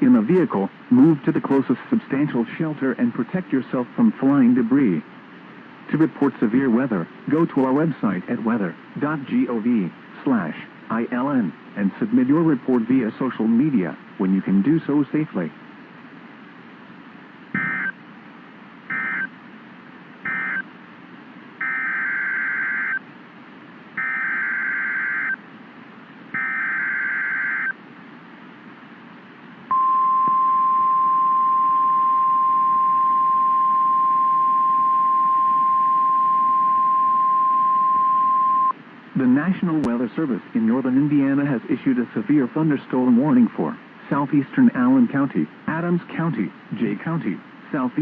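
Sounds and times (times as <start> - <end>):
faint radio hiss: 0.0 - 48.0
steady alert tone: 17.6 - 17.9.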